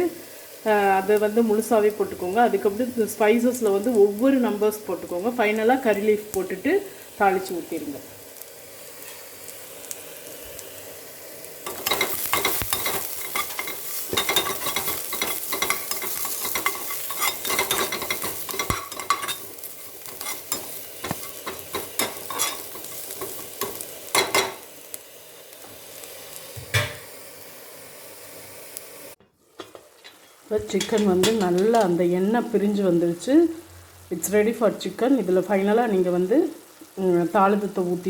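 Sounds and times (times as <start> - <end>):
food sizzling in hot oil: 0.0 - 38.0
crackling: 11.5 - 26.6
spoon scraping a pan: 11.6 - 24.6.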